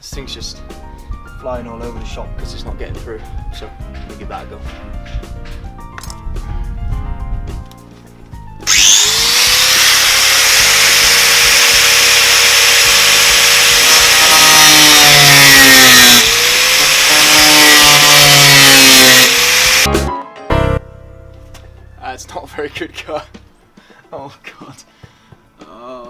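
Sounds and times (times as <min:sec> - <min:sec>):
angle grinder cutting steel: 0:08.6 - 0:19.9.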